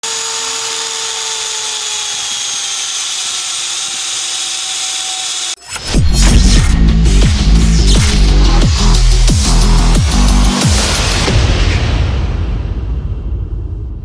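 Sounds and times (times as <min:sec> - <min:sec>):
electric drill whining: 0:00.0 - 0:06.0
loud electronic music: 0:05.7 - 0:11.7.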